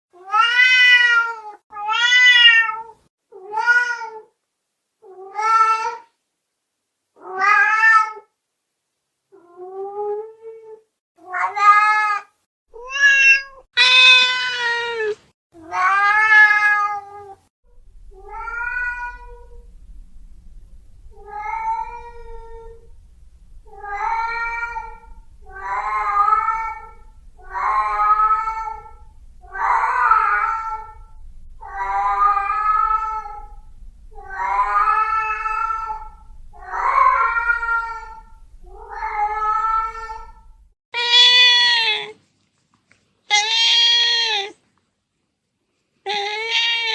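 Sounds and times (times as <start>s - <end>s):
cat meowing: 0.2s - 4.3s, 11.2s - 17.4s, 18.0s - 42.2s, 43.3s - 44.6s, 46.1s - 46.9s
faint low hum: 17.7s - 40.8s.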